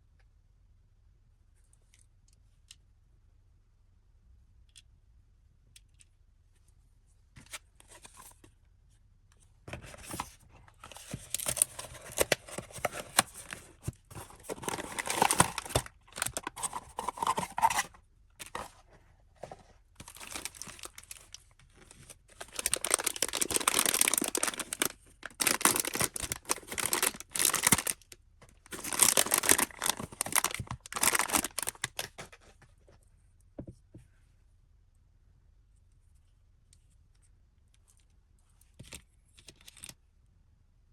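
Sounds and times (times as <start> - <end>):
packaging torn and crinkled: 10.9 - 18.7, 20.0 - 32.3.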